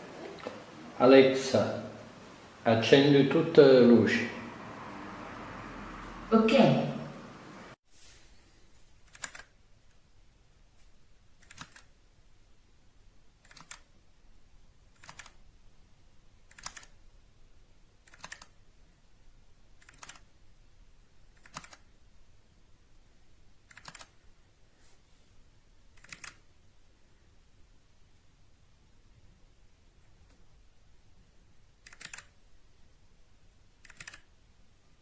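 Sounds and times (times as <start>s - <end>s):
mechanical keyboard key clicks: 9.1s - 9.5s, 11.4s - 11.9s, 13.4s - 13.8s, 15.0s - 15.4s, 16.5s - 17.0s, 18.0s - 18.5s, 19.8s - 20.2s, 21.4s - 21.8s, 23.7s - 24.1s, 26.0s - 26.4s, 31.8s - 32.3s, 33.8s - 34.3s.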